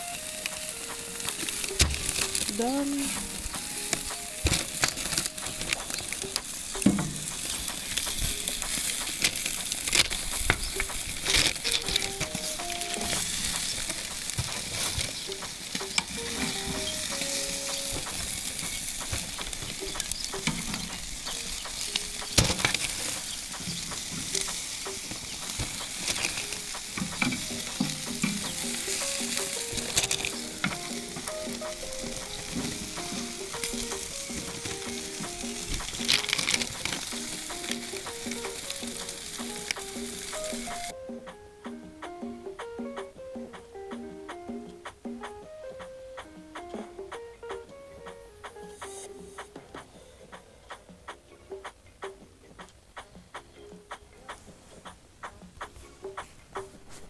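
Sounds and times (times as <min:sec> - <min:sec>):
wings sizzling: 0:00.0 - 0:41.0
sharp pops and clicks: 0:00.0 - 0:49.9
faint background music: 0:00.0 - 0:57.0.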